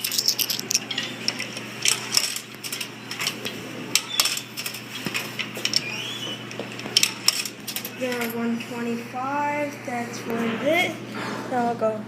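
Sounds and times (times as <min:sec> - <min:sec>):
coins clinking into coin slot: 0:00.0 - 0:05.9, 0:06.8 - 0:08.4.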